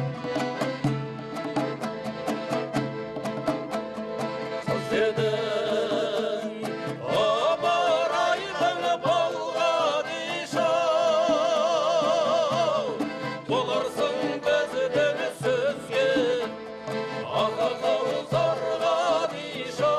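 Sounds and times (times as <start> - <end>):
instrumental accompaniment: 0.0 - 19.9
folk singing with vibrato: 4.2 - 19.9.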